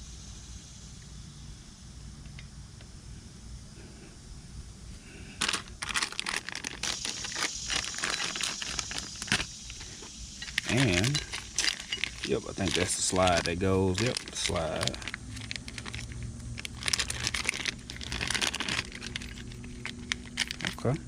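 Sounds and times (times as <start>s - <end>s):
low steady hum: 0.0s - 21.0s
plastic packaging crinkling: 5.4s - 21.0s.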